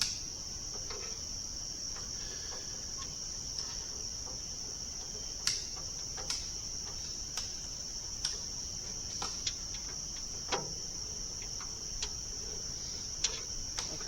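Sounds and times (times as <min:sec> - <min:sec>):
crickets chirring: 0:00.0 - 0:14.0
light clicks and knocks: 0:08.2 - 0:10.8.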